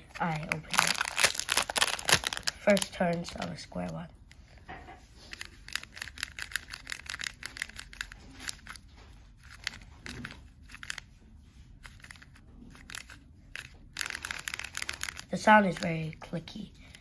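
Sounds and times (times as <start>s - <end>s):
plastic puzzle clicking: 5.3s - 8.8s, 11.8s - 15.9s.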